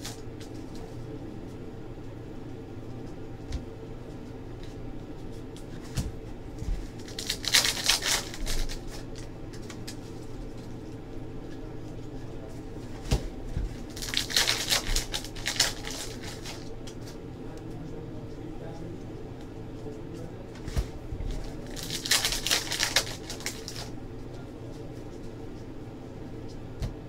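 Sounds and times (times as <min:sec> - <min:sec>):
steady low hum: 0:00.0 - 0:27.0
card wrappers crinkling: 0:07.0 - 0:10.3, 0:13.8 - 0:16.7, 0:21.4 - 0:23.9.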